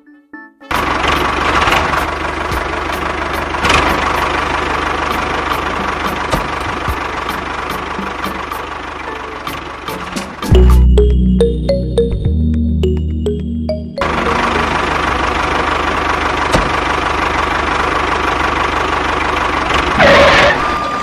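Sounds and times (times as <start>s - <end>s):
small engine running: 0.7s - 10.4s, 14.0s - 21.0s
regular ticking: 1.0s - 19.9s.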